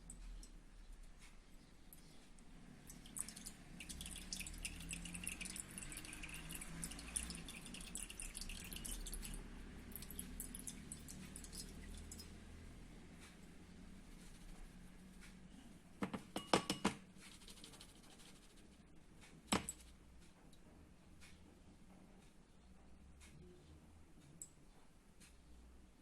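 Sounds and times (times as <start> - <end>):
syrup dripping through strainer: 2.6 - 13.4.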